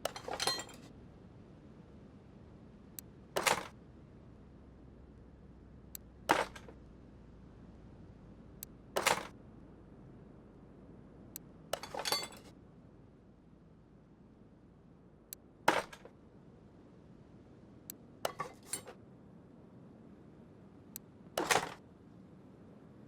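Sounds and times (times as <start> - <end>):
hard objects clinking: 0.0 - 0.9.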